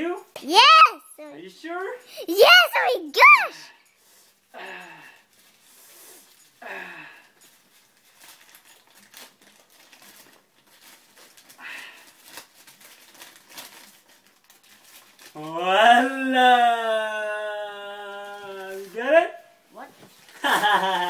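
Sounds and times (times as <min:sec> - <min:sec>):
paper crinkling and rustling: 0:07.5 - 0:15.4.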